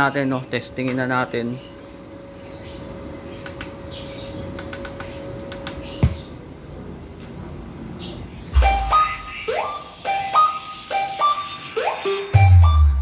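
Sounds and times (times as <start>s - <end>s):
clicks: 3.4s - 3.8s, 4.5s - 5.8s
bass-heavy music through subwoofer: 12.3s - 13.0s.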